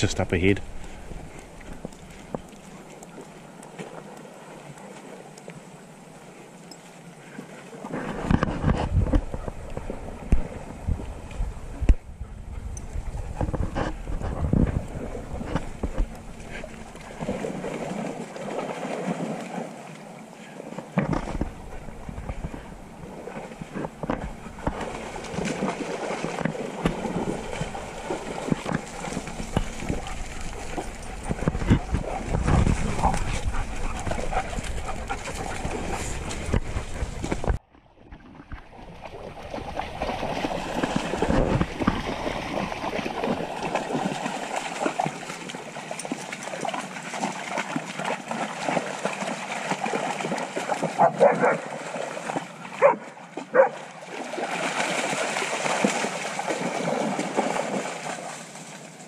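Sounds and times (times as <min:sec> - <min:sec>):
water splashing: 0:00.0 - 0:59.0
dogs barking: 0:51.0 - 0:51.6, 0:52.8 - 0:53.8.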